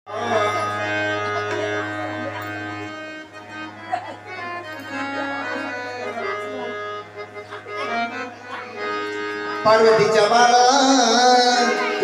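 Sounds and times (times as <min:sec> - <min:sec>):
harmonium playing reed chords: 0:00.1 - 0:12.0.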